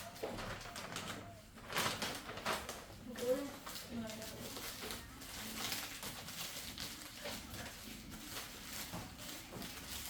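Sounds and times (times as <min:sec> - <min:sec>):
packages and bags rustling: 0:00.0 - 0:10.0.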